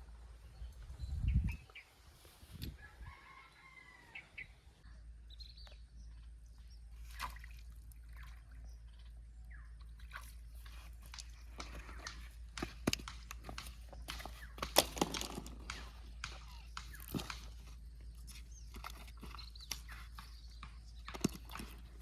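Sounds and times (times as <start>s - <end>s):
faint rooster crowing: 2.7s - 4.7s.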